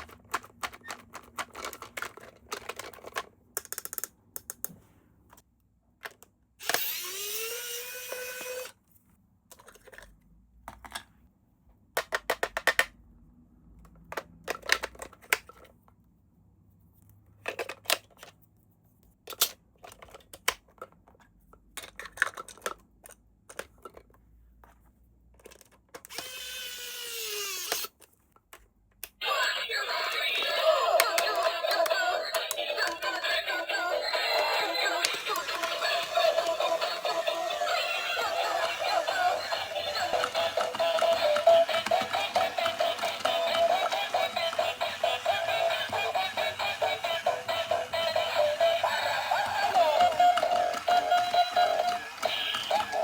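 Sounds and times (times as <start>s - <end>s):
clicks of toy and packaging handled: 0.0s - 7.1s, 9.4s - 11.1s, 13.8s - 16.0s, 17.4s - 18.4s, 19.1s - 26.4s, 30.4s - 53.0s
toy motor whirring: 6.6s - 8.8s, 26.1s - 28.0s, 29.3s - 53.0s.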